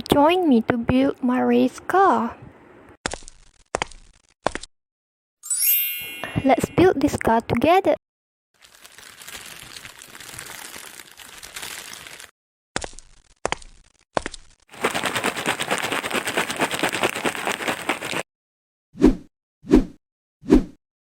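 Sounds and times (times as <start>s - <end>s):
plastic bricks rattling: 14.7s - 18.2s.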